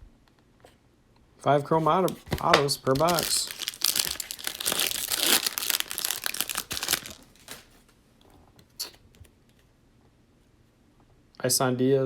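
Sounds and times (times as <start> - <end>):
foil wrapper crinkling: 1.8 - 7.8.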